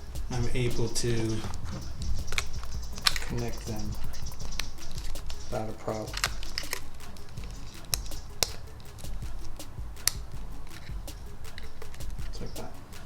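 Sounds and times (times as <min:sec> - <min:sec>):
plastic connectors clicking together: 0:01.4 - 0:09.2.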